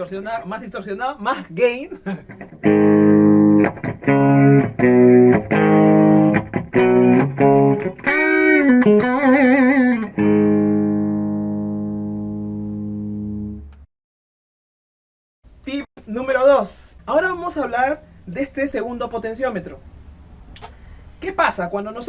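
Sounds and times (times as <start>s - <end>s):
distorted electric guitar: 2.3s - 13.8s.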